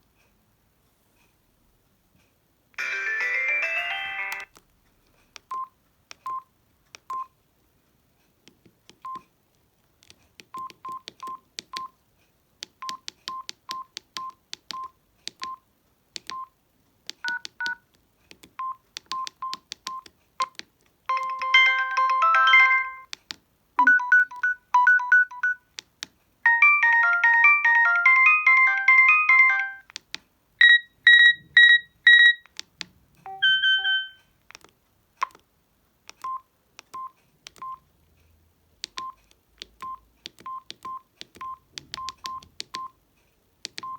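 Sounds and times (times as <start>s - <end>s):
phone key beeps: 5.5s - 6.4s, 9.0s - 9.3s, 10.5s - 12.0s, 12.8s - 15.6s, 16.2s - 16.5s, 17.2s - 17.8s, 18.6s - 23.2s, 23.8s - 25.6s, 30.6s - 32.6s, 33.3s - 34.3s, 36.1s - 37.8s, 38.8s - 43.0s, 43.7s - 43.9s
phone alarm tones: 23.8s - 25.6s, 26.5s - 29.9s, 30.6s - 32.4s, 33.3s - 34.2s.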